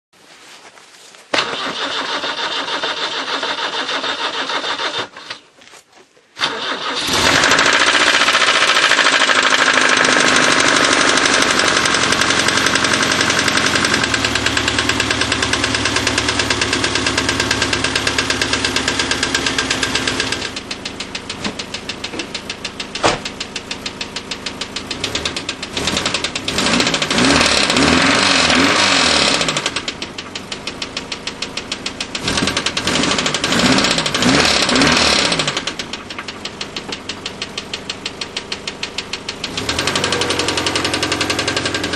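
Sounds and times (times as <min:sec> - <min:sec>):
engine revving: 0:06.4 - 0:20.6, 0:24.8 - 0:41.9
car engine running with rhythmic knock: 0:07.2 - 0:41.9.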